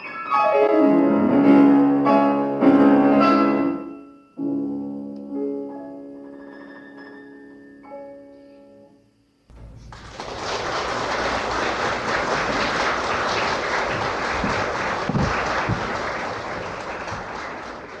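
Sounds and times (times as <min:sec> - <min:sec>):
audience applauding: 0:09.8 - 0:18.0.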